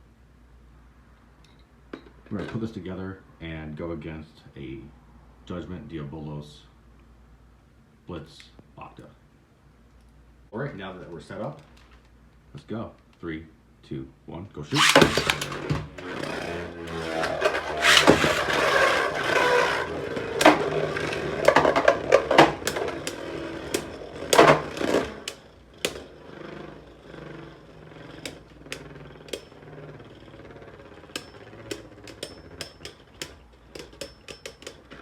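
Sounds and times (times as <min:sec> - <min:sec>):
spinning tops clashing: 0:14.7 - 0:26.1
spinning tops clicking: 0:14.7 - 0:35.0
spinning tops whirring: 0:14.7 - 0:35.0.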